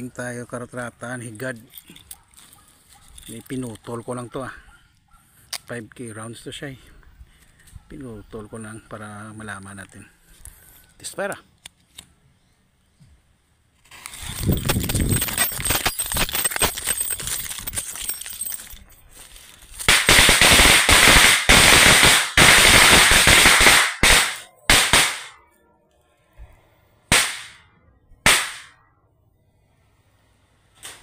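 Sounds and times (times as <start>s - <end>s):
firecracker string crackling bangs: 19.9s - 25.3s, 27.1s - 27.6s, 28.2s - 28.8s.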